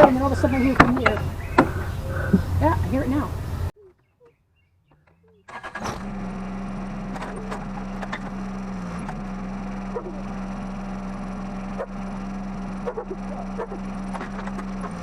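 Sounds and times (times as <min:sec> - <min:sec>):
light clicks and knocks: 0:00.0 - 0:03.2
lawn tractor engine running: 0:00.0 - 0:03.7, 0:05.5 - 0:15.0.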